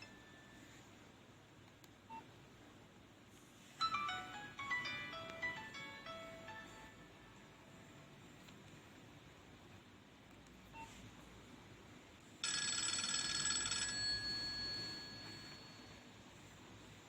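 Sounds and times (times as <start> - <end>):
phone ringtone with trill: 3.8 - 7.9, 12.4 - 16.0.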